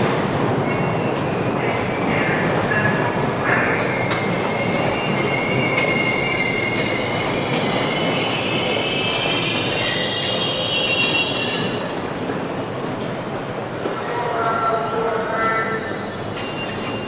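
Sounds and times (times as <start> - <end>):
subway train rumble: 0.0 - 17.0
wheel squeal: 3.8 - 11.9.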